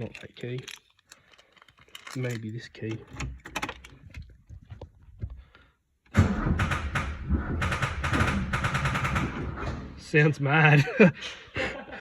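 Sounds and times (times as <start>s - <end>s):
engine clattering: 6.1s - 10.2s.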